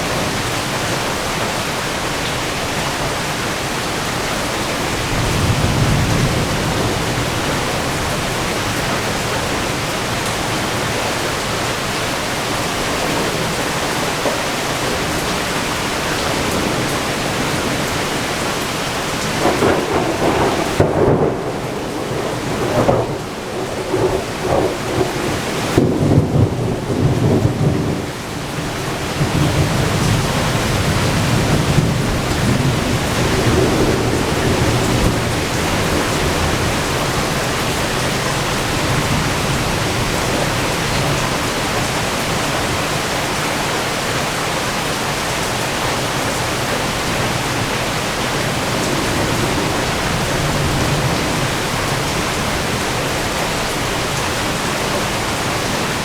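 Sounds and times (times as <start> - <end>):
heavy rain falling: 0.0 - 56.0
thunder rumbling: 4.5 - 14.2, 14.9 - 42.9, 46.0 - 56.0.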